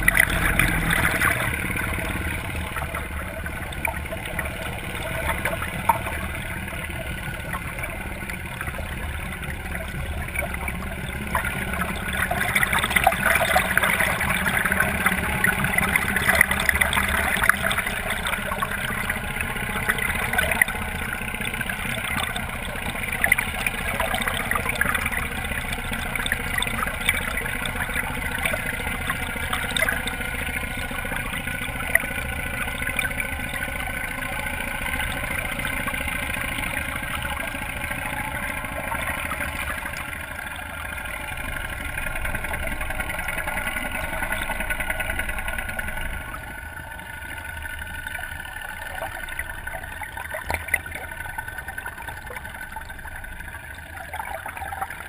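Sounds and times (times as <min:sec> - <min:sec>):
motorboat engine running: 0:00.0 - 0:55.0
water rushing along hull: 0:00.0 - 0:55.0.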